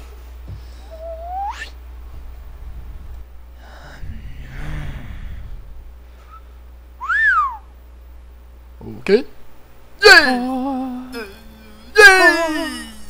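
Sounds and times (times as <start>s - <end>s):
steady low hum: 0.0s - 13.0s
rising whistle: 0.9s - 1.8s, 6.2s - 7.7s
whistle rising and falling: 0.9s - 1.8s, 7.0s - 7.7s.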